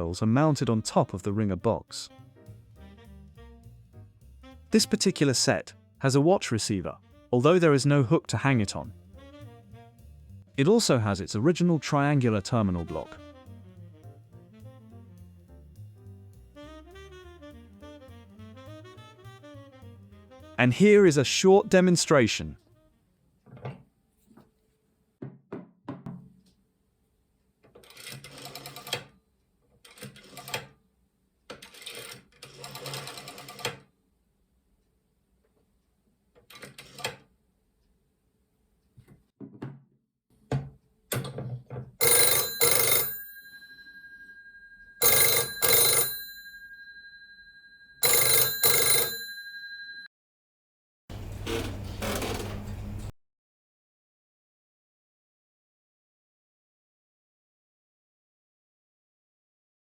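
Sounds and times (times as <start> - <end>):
dial telephone clicks and rattling: 42.0 - 46.9, 48.0 - 49.9
telephone bell ringing: 42.0 - 50.1.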